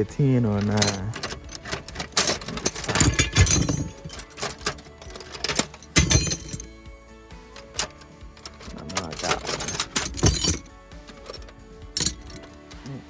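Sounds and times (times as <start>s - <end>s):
metal tools clinking: 0.0s - 13.0s.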